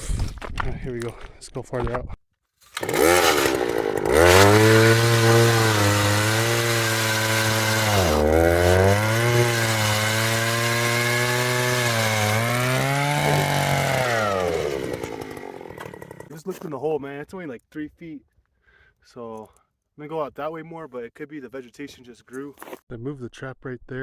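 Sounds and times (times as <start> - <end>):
power ice auger drilling: 2.7 - 16.3.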